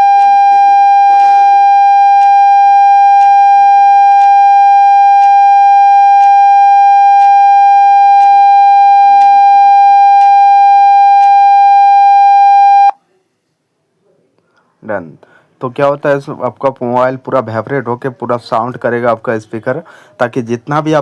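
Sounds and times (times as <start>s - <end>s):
buzzy high tone from phone speaker: 0.0s - 12.9s.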